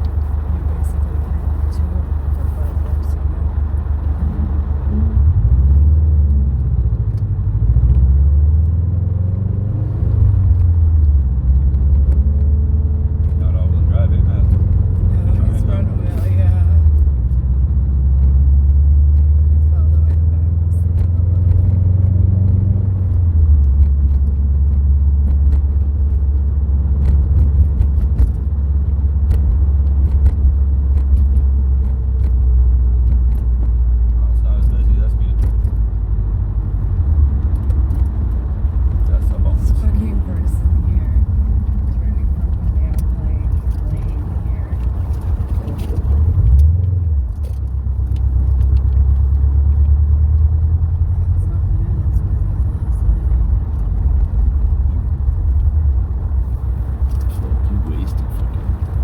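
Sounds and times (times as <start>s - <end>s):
car engine and tyres rumbling: 0.0s - 59.0s.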